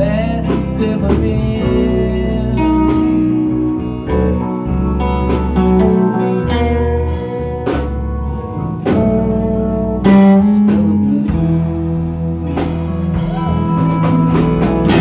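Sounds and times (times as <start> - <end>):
guitar notes: 0.0 - 15.0
low bass notes: 0.0 - 15.0.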